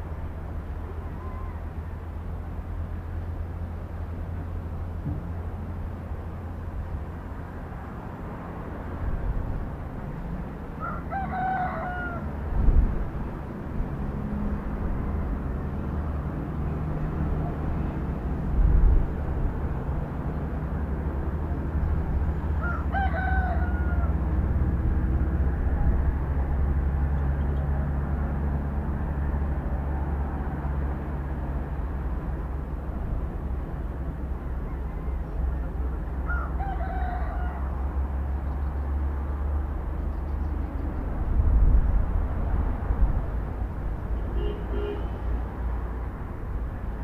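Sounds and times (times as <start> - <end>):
rooster crowing: 10.8 - 12.4, 22.5 - 24.3, 36.2 - 37.9.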